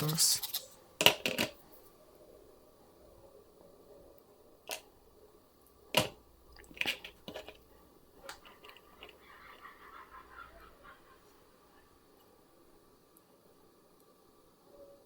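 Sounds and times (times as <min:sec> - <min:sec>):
small clicks and scraping: 0:06.0 - 0:09.2.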